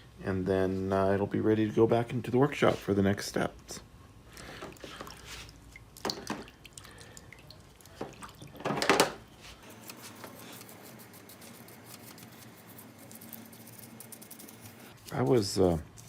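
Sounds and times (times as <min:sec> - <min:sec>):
water splashing and dripping: 0:04.4 - 0:08.8.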